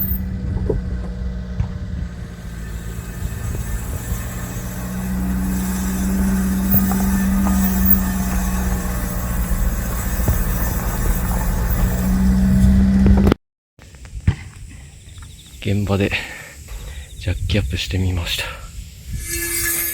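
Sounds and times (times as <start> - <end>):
held tone: 0.0 - 0.3, 19.1 - 19.9
brake rubbing and scraping: 0.0 - 13.4, 19.0 - 19.9
vehicle rumble: 0.0 - 13.4.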